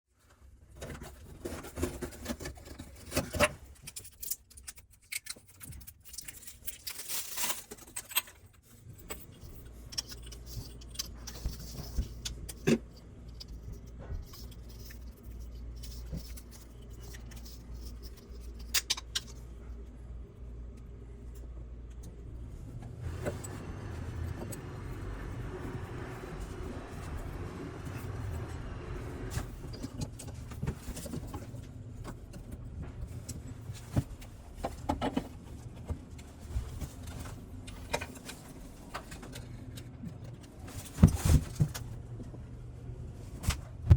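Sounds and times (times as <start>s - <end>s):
steady low rumble: 19.3s - 40.6s.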